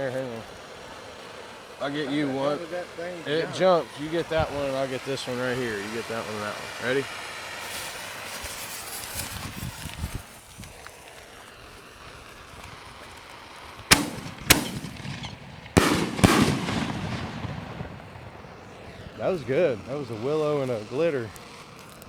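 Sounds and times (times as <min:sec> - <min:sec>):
firework bursts: 0:00.0 - 0:22.0
firework crackle: 0:00.0 - 0:22.0
firework launch thumps: 0:07.6 - 0:10.7, 0:13.9 - 0:19.1.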